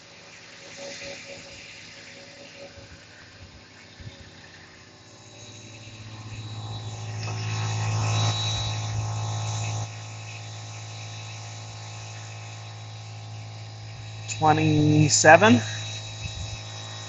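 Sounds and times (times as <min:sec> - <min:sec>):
air compressor humming: 0:00.0 - 0:17.0.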